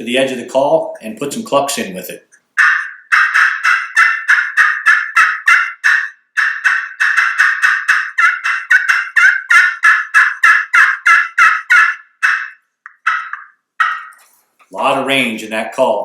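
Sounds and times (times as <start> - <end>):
slate turkey call yelps: 2.4 - 14.3.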